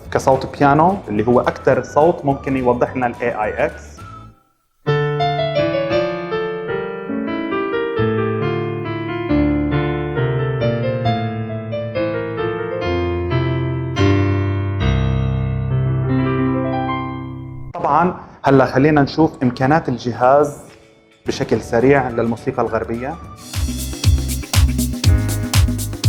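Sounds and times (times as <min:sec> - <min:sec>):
digital piano melody: 0:04.9 - 0:17.8, 0:19.0 - 0:26.0.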